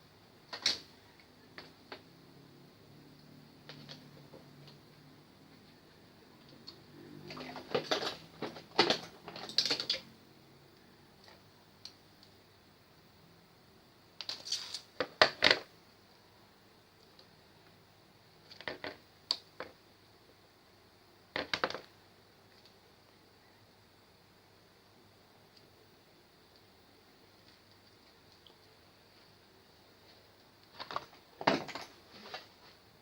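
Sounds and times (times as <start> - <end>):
small parts clicking and rattling: 7.4 - 10.1.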